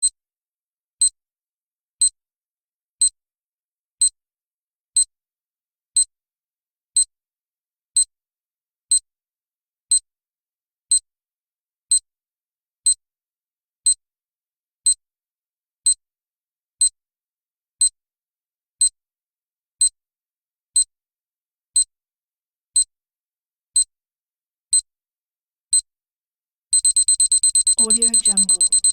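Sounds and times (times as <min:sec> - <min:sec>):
timer ticking: 0:26.8 - 0:28.9.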